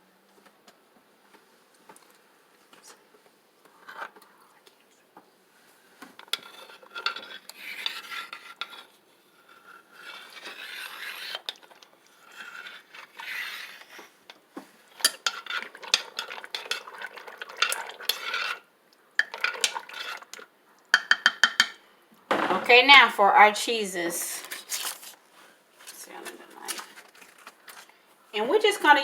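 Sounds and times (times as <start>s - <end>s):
metal spoon stirring in a pot: 6.2s - 21.8s.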